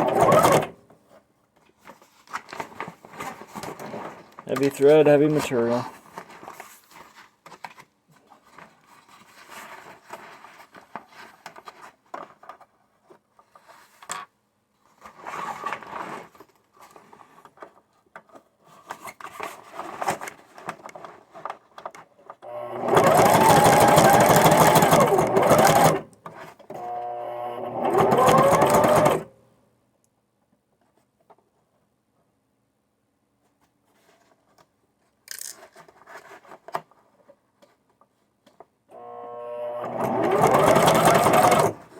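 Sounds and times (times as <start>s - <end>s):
sewing machine stitching: 0.0s - 0.8s, 22.4s - 26.1s, 26.7s - 29.3s, 39.0s - 41.9s.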